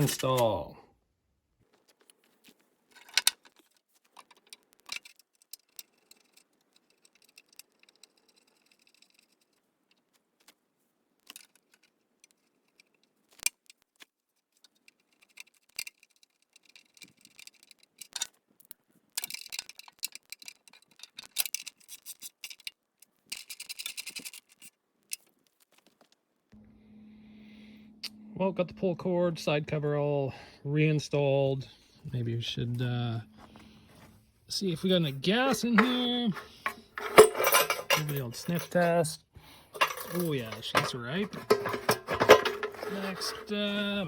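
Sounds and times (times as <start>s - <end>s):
hand tools and bolts clattering: 0.0s - 0.6s, 34.8s - 44.0s.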